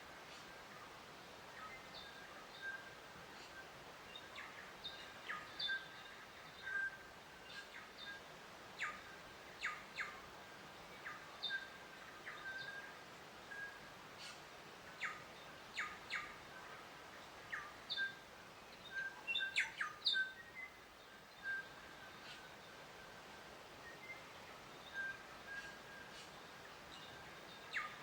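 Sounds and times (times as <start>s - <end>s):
faint outdoor hiss: 0.0s - 28.0s
songbirds chirping: 0.0s - 28.0s.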